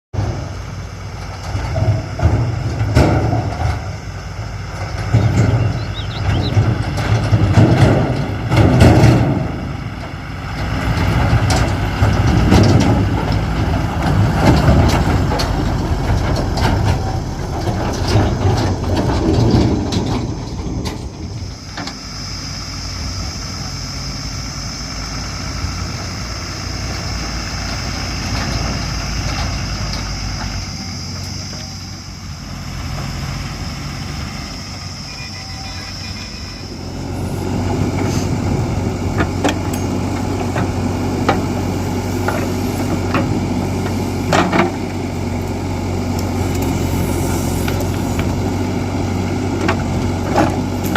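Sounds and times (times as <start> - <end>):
diesel engine revving: 0.1 - 50.9.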